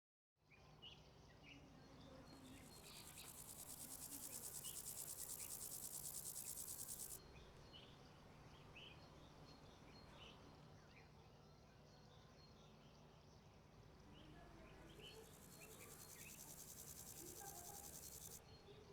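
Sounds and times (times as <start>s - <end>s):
faint bird chirps: 1.3s - 7.9s, 14.2s - 18.9s
grasshopper stridulating: 2.4s - 7.2s, 15.1s - 18.4s.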